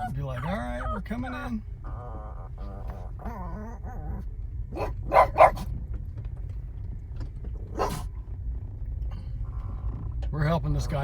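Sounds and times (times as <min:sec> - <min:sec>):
dog whining: 0:01.8 - 0:05.6
dog barking sharply: 0:04.7 - 0:05.7, 0:07.8 - 0:08.1.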